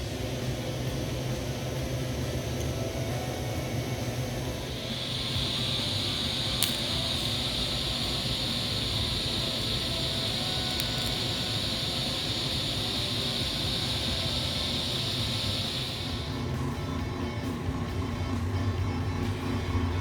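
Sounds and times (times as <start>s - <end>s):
steady hiss: 0.0s - 17.4s.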